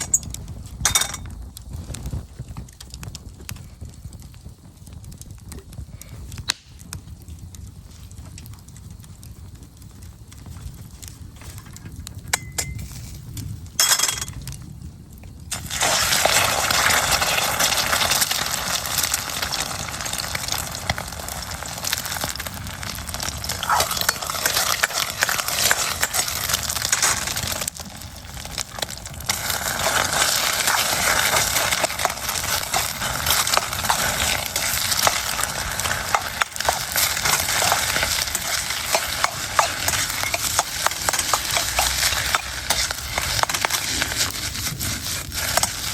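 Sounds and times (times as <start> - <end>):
rice sizzling in a wok: 0.0 - 45.9
spatula scraping a pan: 23.2 - 45.9.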